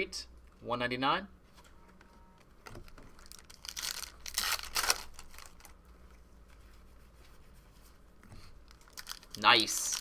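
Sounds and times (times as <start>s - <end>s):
trading cards rustling: 2.8s - 5.8s, 8.6s - 10.0s.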